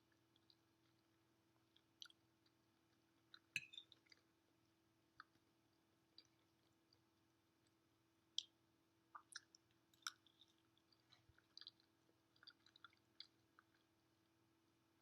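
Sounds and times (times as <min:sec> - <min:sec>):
person chewing: 0:01.7 - 0:04.3, 0:09.2 - 0:14.0.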